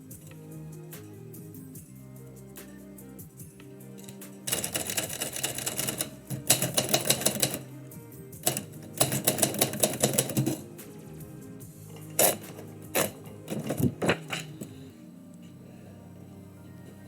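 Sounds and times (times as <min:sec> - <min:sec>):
background music: 0:00.0 - 0:17.0
rapid typewriter typing: 0:04.0 - 0:07.8, 0:08.4 - 0:10.8.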